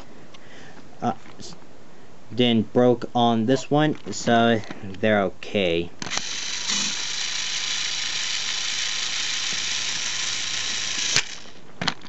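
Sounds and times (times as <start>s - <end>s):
toy train motor whine: 6.1s - 11.6s.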